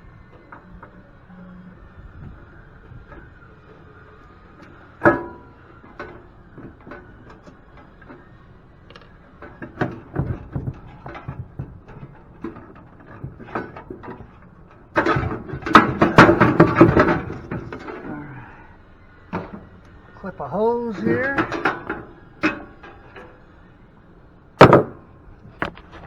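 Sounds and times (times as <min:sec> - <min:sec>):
metal parts and tools clattering: 0:08.9 - 0:18.2, 0:20.9 - 0:23.4.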